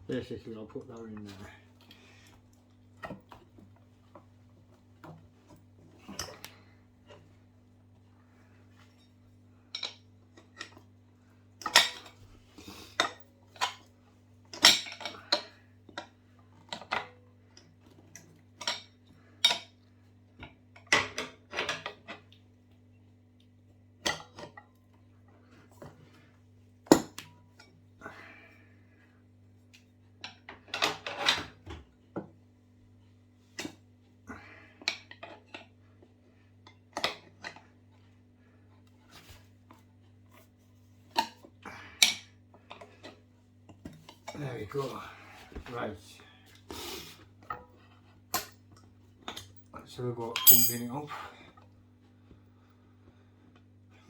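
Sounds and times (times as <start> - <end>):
tools clinking on wheel rim: 50.4 - 51.0.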